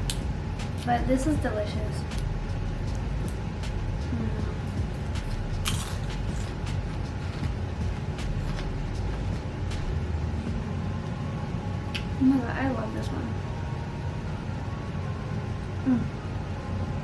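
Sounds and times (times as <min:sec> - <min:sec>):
low rumble: 0:00.0 - 0:17.0
chips crunching when chewed: 0:05.2 - 0:07.5.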